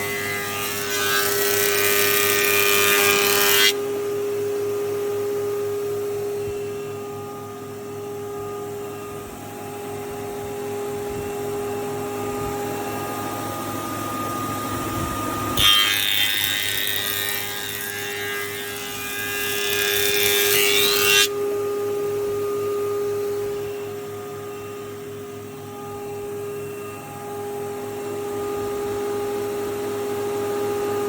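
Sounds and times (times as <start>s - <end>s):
board being planed: 0.0s - 3.8s, 15.6s - 21.3s.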